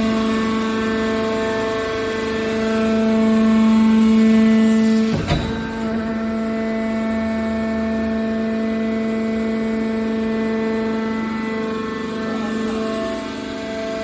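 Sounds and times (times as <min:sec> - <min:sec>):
hydraulic baler whining: 0:02.7 - 0:07.2.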